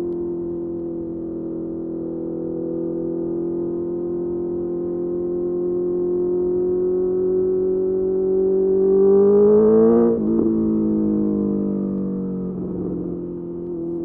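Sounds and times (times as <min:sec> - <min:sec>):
motorcycle engine revving: 0:07.1 - 0:11.7.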